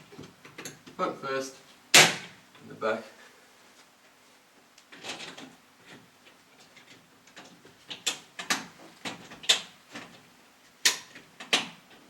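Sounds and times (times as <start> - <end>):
pelmet clipping onto brackets: 1.9 - 2.4, 4.8 - 10.2, 10.8 - 12.0.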